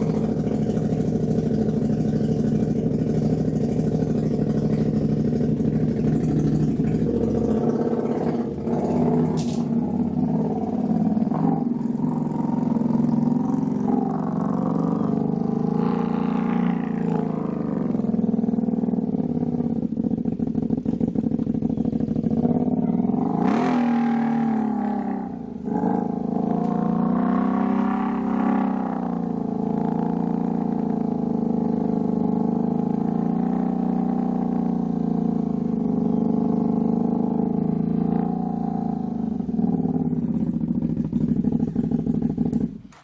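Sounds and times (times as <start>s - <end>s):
vehicle engine revving: 0.0s - 43.0s.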